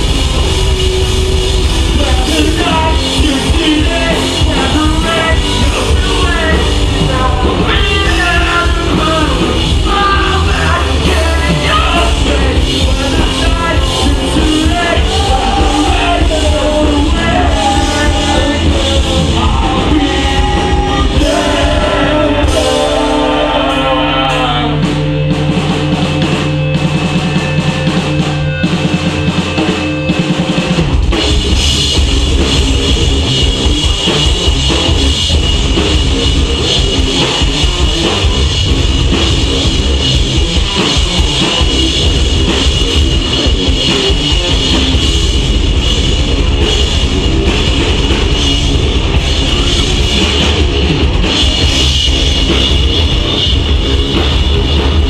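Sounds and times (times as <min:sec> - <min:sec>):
bass guitar: 0:00.0 - 0:55.0
electric guitars: 0:00.0 - 0:55.0
fast drumming: 0:00.0 - 0:55.0.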